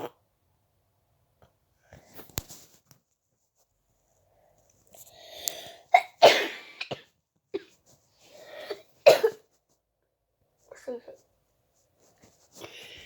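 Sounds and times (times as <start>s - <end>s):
person coughing: 6.0s - 7.8s, 8.6s - 9.4s
person breathing in: 12.6s - 13.0s.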